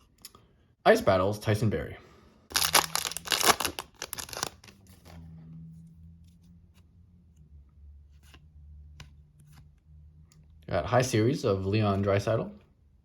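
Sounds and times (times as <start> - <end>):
low steady hum: 1.7 - 13.0
foil wrapper crinkling and tearing: 2.5 - 4.8.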